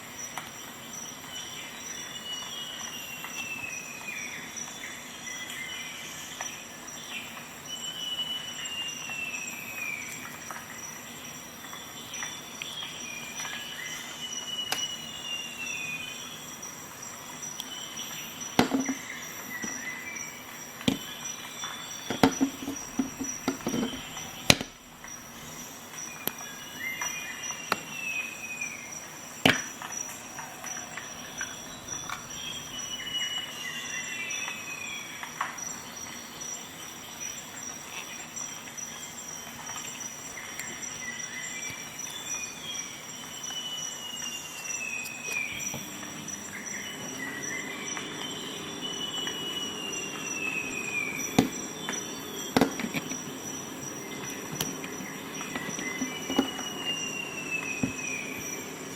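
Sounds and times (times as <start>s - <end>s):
high-pitched insect-like tone: 0.1s - 30.3s, 35.6s - 58.9s
bird whistling: 12.8s - 16.4s, 31.4s - 35.0s, 43.5s - 58.9s.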